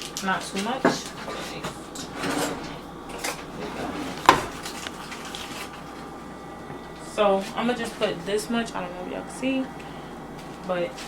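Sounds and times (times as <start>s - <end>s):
utensil scraping and clinking dishes: 0.0s - 5.9s.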